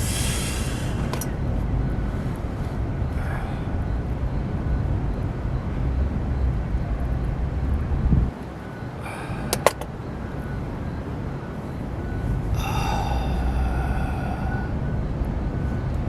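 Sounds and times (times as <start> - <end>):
steady low rumble: 0.0 - 16.0
sharp clicks: 9.5 - 9.9.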